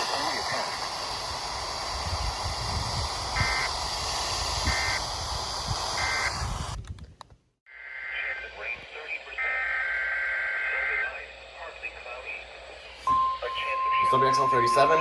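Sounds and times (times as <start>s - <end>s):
radio static hiss: 0.0s - 6.8s, 7.7s - 15.0s
short electronic beeps: 13.1s - 15.0s.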